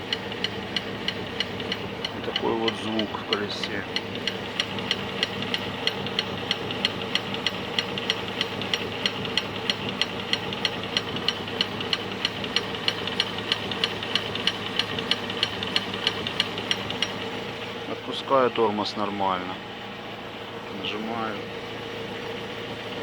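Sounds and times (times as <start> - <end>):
brake pads knocking: 0.0 - 18.3.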